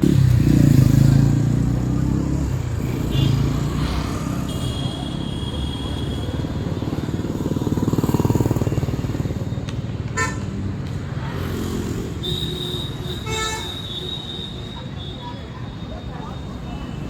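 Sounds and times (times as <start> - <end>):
vehicle horn toot: 4.4 - 6.5, 10.2 - 10.5, 12.2 - 15.3.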